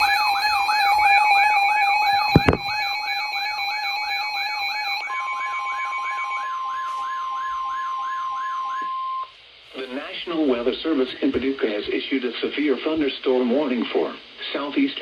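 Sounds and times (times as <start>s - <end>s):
short thump: 2.1s - 2.8s.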